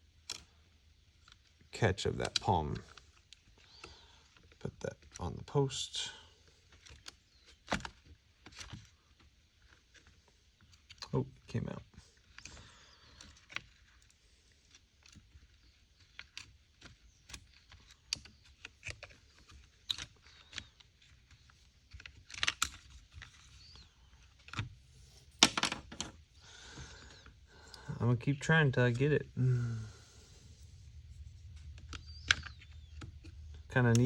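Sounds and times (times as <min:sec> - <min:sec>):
small parts clicking and tapping: 0:00.1 - 0:05.2, 0:12.2 - 0:26.2, 0:31.4 - 0:34.0
parts clattering: 0:17.5 - 0:28.0.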